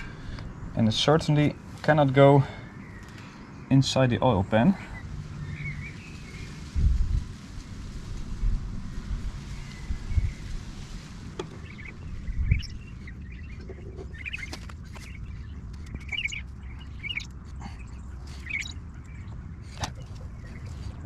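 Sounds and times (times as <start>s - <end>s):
birds chirping: 0.0s - 21.0s
low steady rumble: 3.9s - 21.0s.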